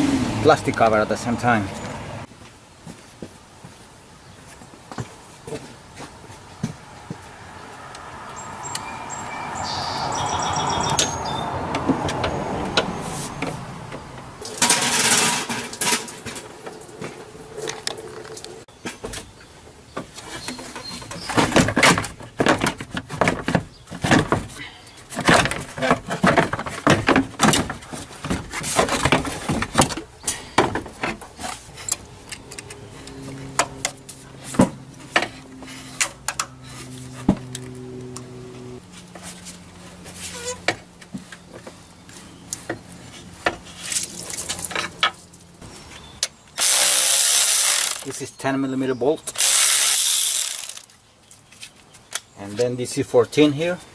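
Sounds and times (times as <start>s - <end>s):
plastic parts knocking and scraping: 20.2s - 31.7s.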